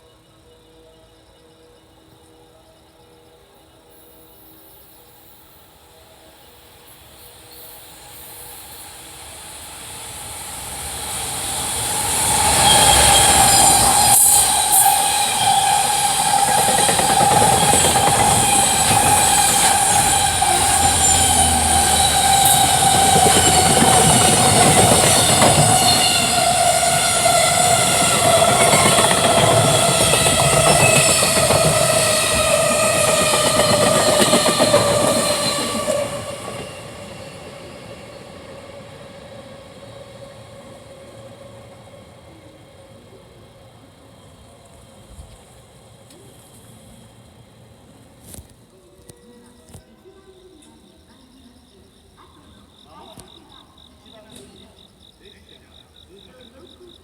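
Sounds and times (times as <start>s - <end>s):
freight train passing: 0.0s - 56.9s
wheels clattering on rail: 9.8s - 48.6s.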